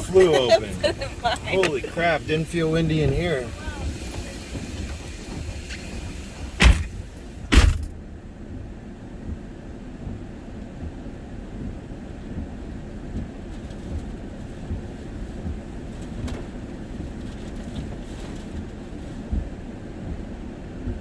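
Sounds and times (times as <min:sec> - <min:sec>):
sharp knock: 0:06.6 - 0:07.9.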